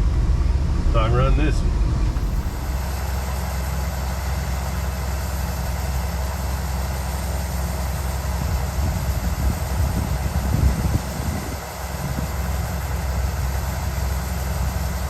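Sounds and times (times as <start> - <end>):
diesel engine idling: 0.0 - 15.0.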